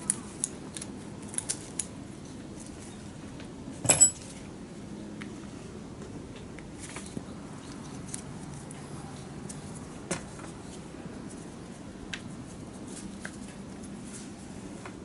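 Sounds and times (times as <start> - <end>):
ringing metal clink: 3.8 - 4.2.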